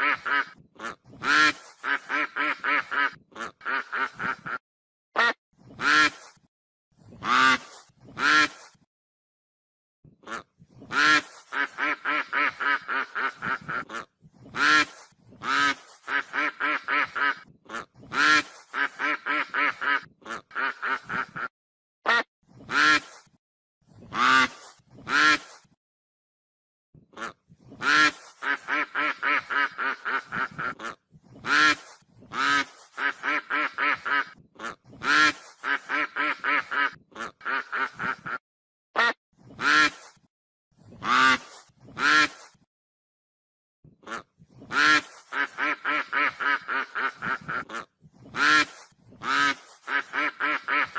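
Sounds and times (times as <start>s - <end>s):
goose honking: 0.0s - 4.6s, 27.2s - 38.4s, 44.1s - 50.9s.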